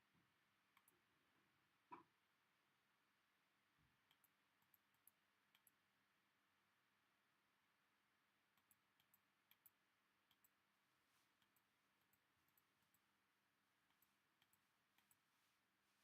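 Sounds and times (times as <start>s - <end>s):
faint irregular clicks: 0.1s - 2.2s, 3.6s - 6.2s, 8.3s - 16.0s.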